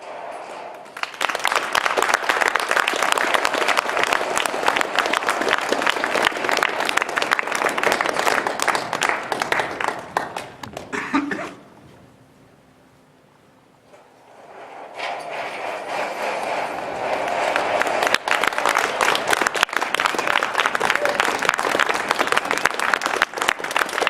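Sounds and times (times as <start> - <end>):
audience applauding: 0.8 - 11.6, 16.0 - 24.0.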